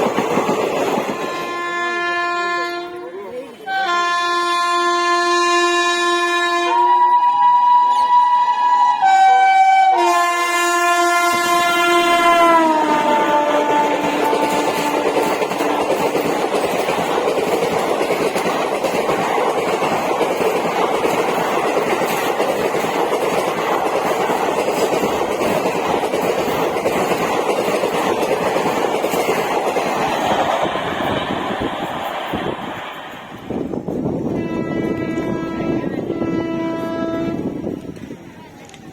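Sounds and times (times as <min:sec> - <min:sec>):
train wheels clattering on rails: 0:00.0 - 0:01.9, 0:10.8 - 0:35.4.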